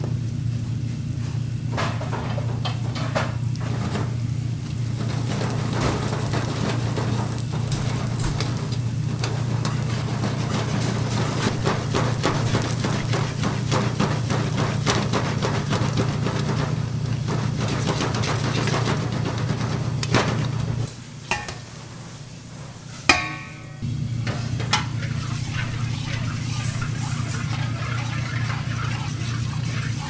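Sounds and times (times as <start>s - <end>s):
crackling frying hiss: 0.0s - 30.0s
steady low hum: 7.0s - 30.0s
utensils clicking and knocking: 23.1s - 30.0s.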